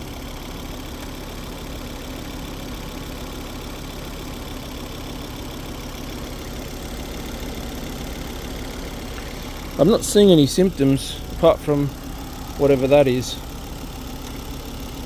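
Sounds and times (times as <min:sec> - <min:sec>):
car engine idling: 0:00.0 - 0:15.0.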